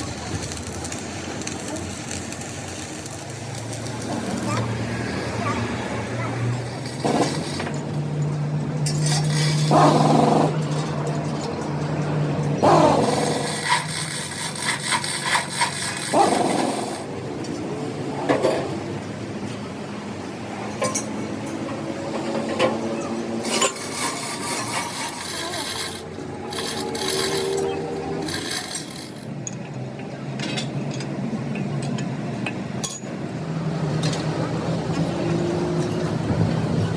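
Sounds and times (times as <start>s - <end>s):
hand tool scraping metal: 13.0s - 17.0s, 23.4s - 29.3s.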